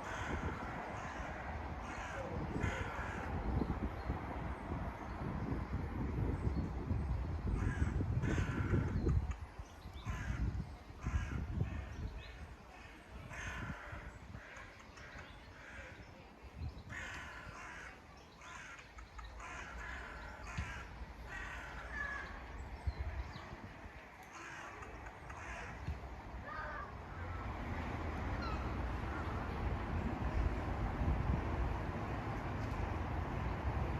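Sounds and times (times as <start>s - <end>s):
crows cawing: 0.0s - 3.3s, 7.6s - 8.9s, 10.0s - 11.6s, 16.9s - 22.4s, 24.3s - 25.9s.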